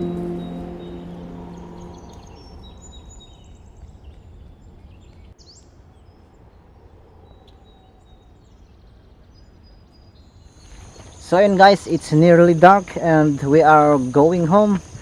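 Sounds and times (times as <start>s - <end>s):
high bird chirps: 0.0s - 3.6s
steady low rumble: 0.0s - 5.1s.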